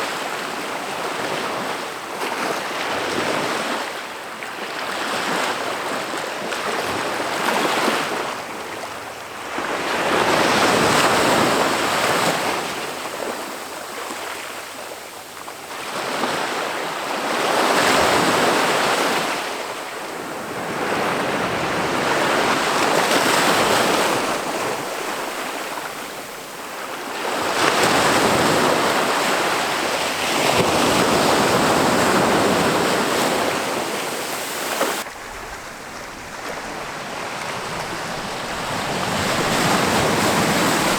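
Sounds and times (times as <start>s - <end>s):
ocean waves breaking on beach: 15.7s - 40.9s.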